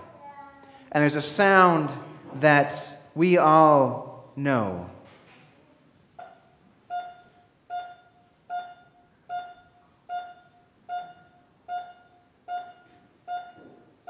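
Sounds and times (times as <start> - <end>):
heart monitor beeping: 6.2 - 14.0.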